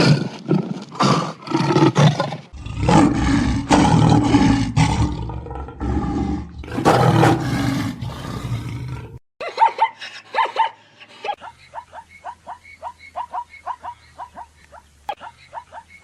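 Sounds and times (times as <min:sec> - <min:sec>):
large animal roaring: 0:02.5 - 0:09.2.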